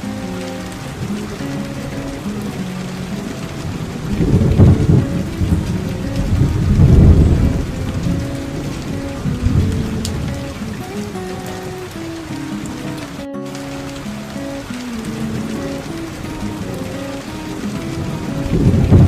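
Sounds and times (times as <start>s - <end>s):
soft guitar melody: 0.0s - 19.0s
steady rainfall: 0.0s - 19.0s
low rolls of thunder: 3.6s - 10.8s, 15.0s - 19.0s.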